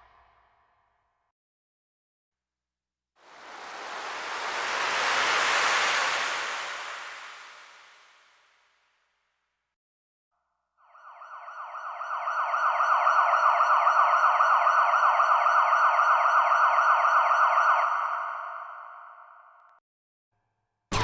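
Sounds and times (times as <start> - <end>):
synthesized siren sweeping upward: 10.9 - 19.3.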